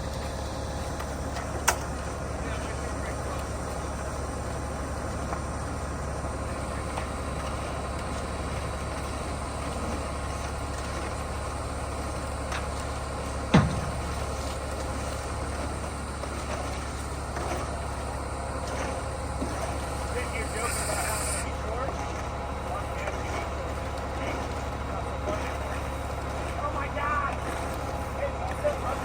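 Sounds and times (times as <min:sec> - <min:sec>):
truck engine running: 0:00.0 - 0:29.0.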